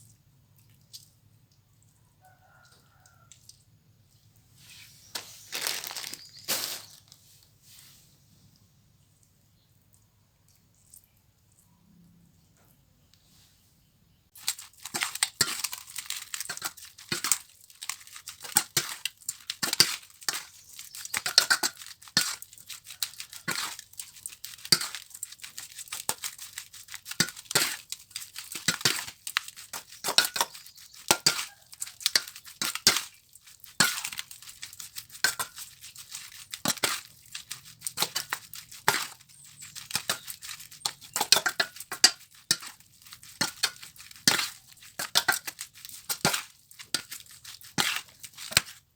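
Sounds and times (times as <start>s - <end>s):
food crackling and clicking: 5.1s - 7.2s, 14.3s - 48.9s.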